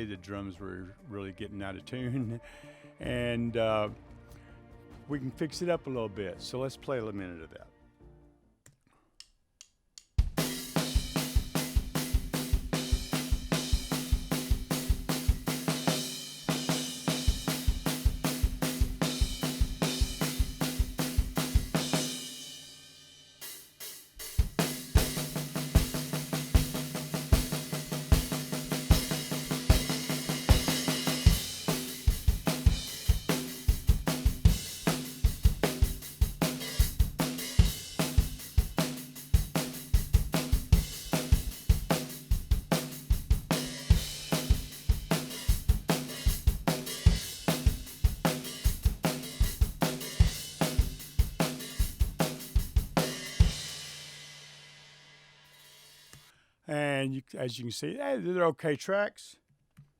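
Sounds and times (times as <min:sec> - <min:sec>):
drum kit playing a groove: 0:10.2 - 0:56.2.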